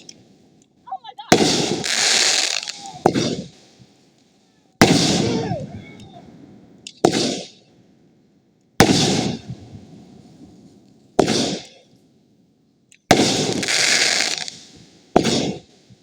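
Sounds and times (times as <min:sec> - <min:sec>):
firework bangs: 0:00.0 - 0:07.9, 0:08.8 - 0:12.0, 0:13.0 - 0:16.0.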